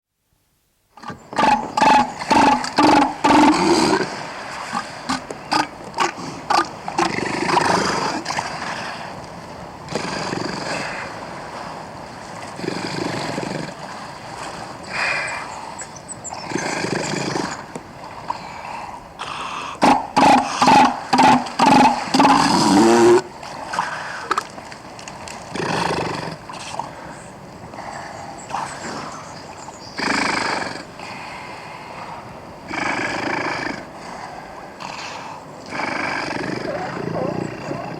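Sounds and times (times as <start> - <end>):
elephant seal belching: 1.0 - 9.1, 9.9 - 11.2, 12.6 - 13.8, 16.3 - 24.5, 25.5 - 26.9, 30.0 - 31.5, 32.6 - 37.9.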